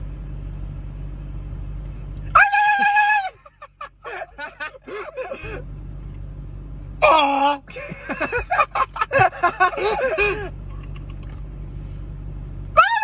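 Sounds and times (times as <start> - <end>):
person squealing: 2.4 - 3.4, 12.8 - 13.0
steady low hum: 3.3 - 12.8.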